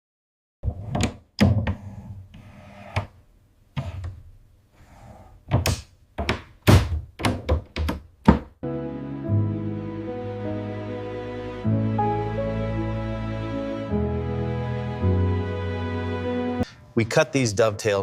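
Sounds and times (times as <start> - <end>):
sharp knocks and thuds: 5.5 - 8.6.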